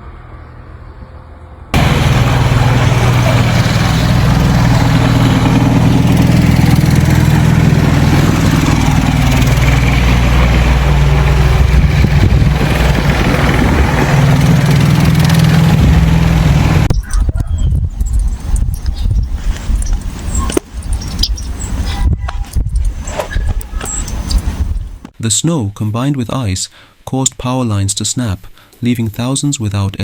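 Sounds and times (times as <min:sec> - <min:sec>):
vehicle engine running: 0:01.7 - 0:21.9.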